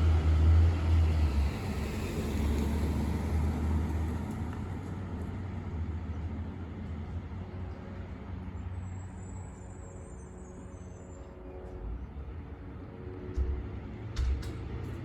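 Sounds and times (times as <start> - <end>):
road vehicle engine rumble: 0.0 - 9.4
tyre and traffic noise: 0.0 - 9.6, 11.2 - 15.0.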